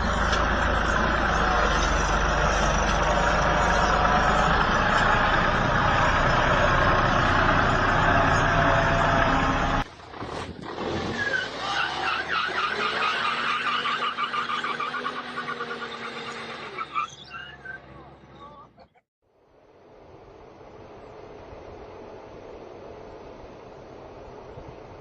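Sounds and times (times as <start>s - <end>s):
heavy vehicle engine running: 0.0s - 11.0s.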